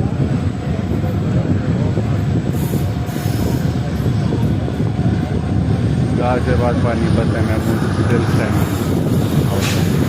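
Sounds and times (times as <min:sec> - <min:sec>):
train wheels rumbling on rail: 0:00.0 - 0:10.0.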